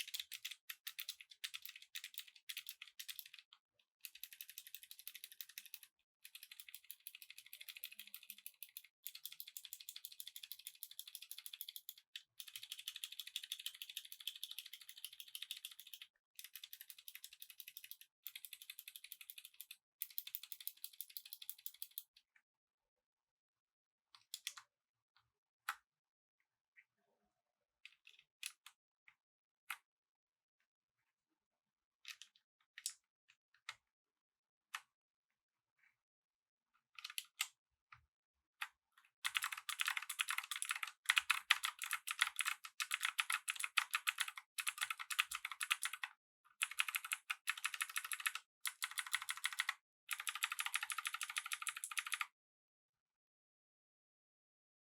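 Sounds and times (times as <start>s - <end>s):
clicky mechanical keyboard typing: 0.0s - 22.1s, 39.2s - 52.3s.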